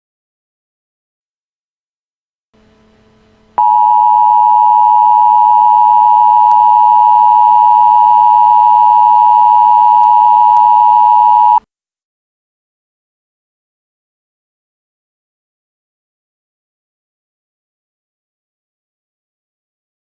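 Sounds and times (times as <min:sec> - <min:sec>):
faint hiss and hum: 0:02.6 - 0:05.7
steady electronic broadcast tone: 0:03.2 - 0:11.6.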